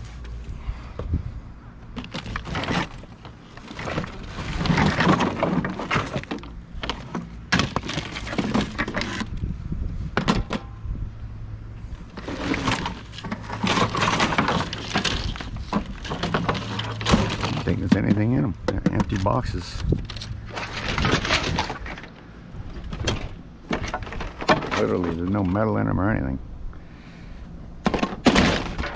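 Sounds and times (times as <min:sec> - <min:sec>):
cardboard crackling and crumpling: 0:01.9 - 0:09.3, 0:12.0 - 0:22.1.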